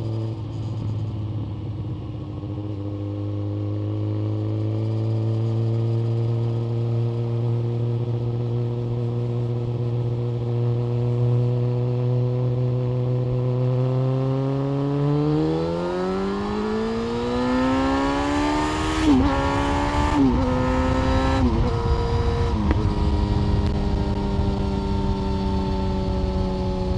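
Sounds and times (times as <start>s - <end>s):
motorcycle engine revving: 10.1s - 26.9s.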